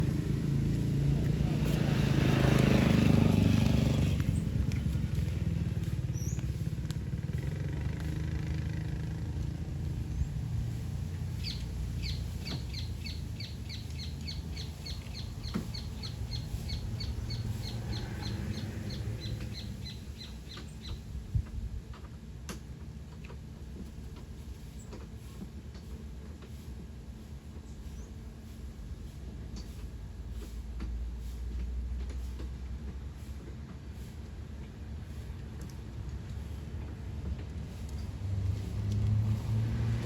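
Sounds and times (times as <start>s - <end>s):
steady low rumble: 0.0s - 21.9s
vehicle rumble: 0.0s - 40.0s.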